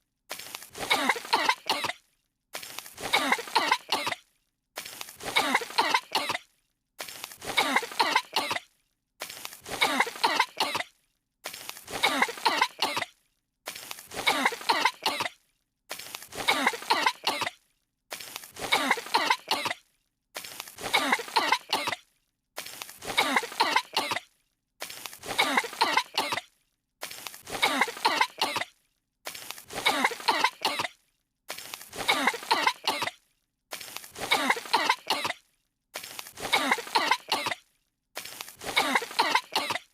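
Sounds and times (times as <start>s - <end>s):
cartoon girls coughing: 0.8s - 2.0s, 3.0s - 4.2s, 5.2s - 6.5s, 7.4s - 8.7s, 9.7s - 10.9s, 11.9s - 13.1s, 14.1s - 15.4s, 16.3s - 17.6s, 18.6s - 19.8s, 20.8s - 22.0s, 23.0s - 24.3s, 25.2s - 26.5s, 27.5s - 28.8s, 29.7s - 31.0s, 31.9s - 33.2s, 34.2s - 35.4s, 36.4s - 37.6s, 38.6s - 39.9s.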